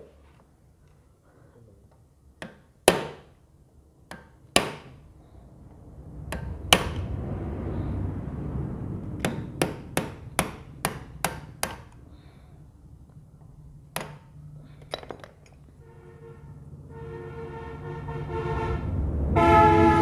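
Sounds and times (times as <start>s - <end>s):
hammer striking metal: 4.1s - 5.0s, 9.2s - 12.0s
steady tone with overtones: 5.0s - 10.8s.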